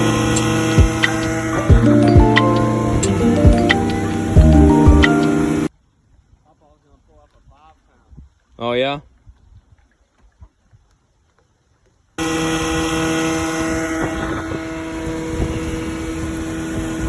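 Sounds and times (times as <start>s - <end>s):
outboard motor running: 0.0s - 5.7s.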